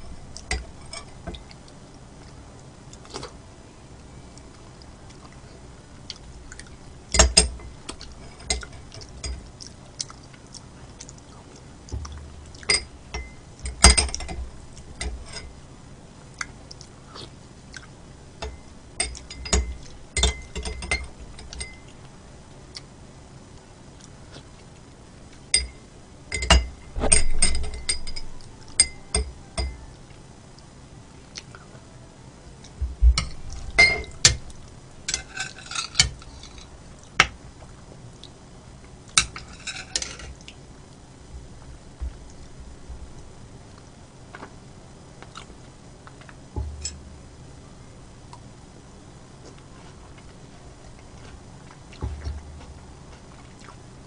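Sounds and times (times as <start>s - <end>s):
utensils clinking on dishes: 0.0s - 1.4s, 7.1s - 9.5s, 12.6s - 15.5s, 18.4s - 21.9s, 25.6s - 29.9s, 33.2s - 34.4s, 35.1s - 36.7s, 39.2s - 40.4s, 46.6s - 47.0s.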